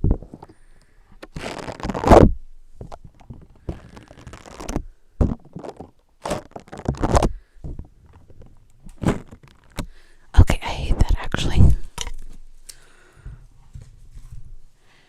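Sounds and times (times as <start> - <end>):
putty squished on microphone: 1.2 - 7.4, 8.8 - 9.9.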